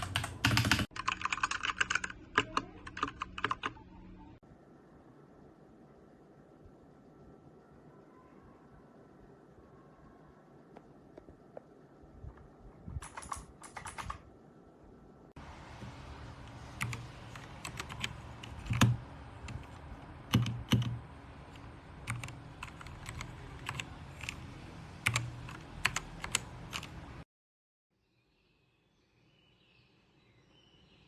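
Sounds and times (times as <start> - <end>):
mechanical keyboard typing: 0.0 - 3.9, 13.0 - 14.3, 16.4 - 27.2.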